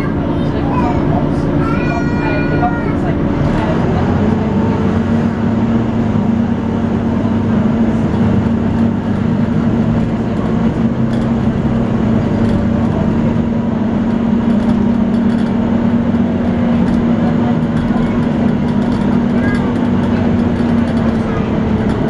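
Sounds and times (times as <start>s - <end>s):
bus diesel engine droning whine: 0.0s - 22.0s.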